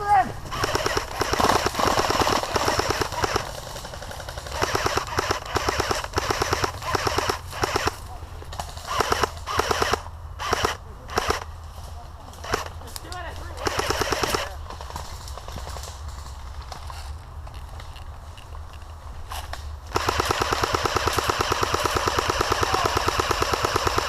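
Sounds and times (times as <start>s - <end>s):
airsoft rifle bursts: 0.5s - 3.7s, 4.3s - 8.1s, 8.8s - 11.5s, 12.4s - 12.8s, 13.4s - 14.6s, 19.9s - 24.0s.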